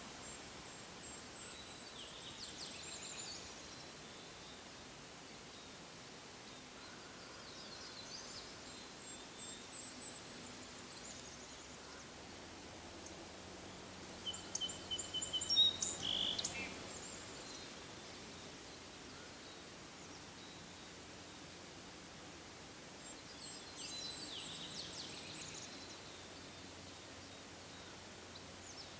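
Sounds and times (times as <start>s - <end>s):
small birds chirping: 6.4s - 21.5s, 23.0s - 28.9s.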